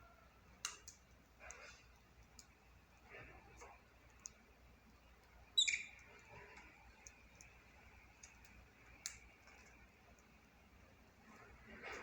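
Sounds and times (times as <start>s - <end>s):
budgerigar chirp: 5.6s - 6.0s
faint clicks: 6.1s - 10.4s.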